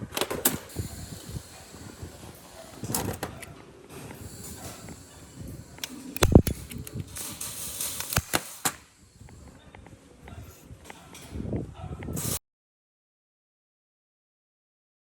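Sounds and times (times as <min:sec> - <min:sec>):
tools clicking and knocking: 0:04.4 - 0:08.8.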